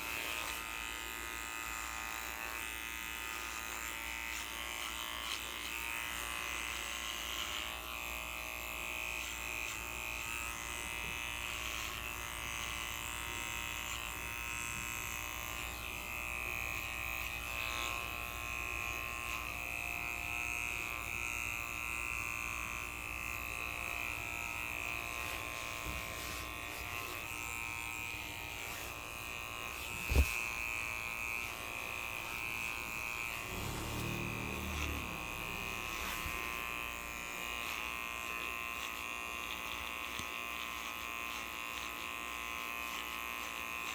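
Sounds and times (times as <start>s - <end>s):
electric hair clipper buzzing: 0.0s - 43.9s.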